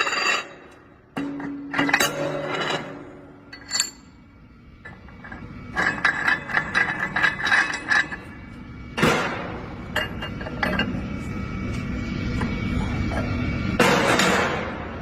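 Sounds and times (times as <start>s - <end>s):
metallic clink: 3.5s - 4.2s.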